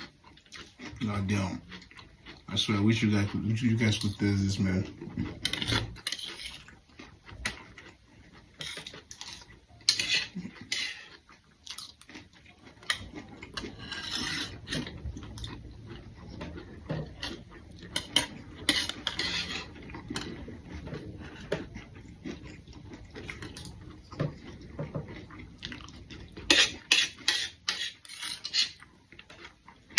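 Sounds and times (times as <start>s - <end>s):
cutlery clinking and scraping plates: 5.2s - 6.7s, 8.6s - 11.2s, 12.8s - 14.9s, 16.4s - 21.7s, 26.4s - 28.8s.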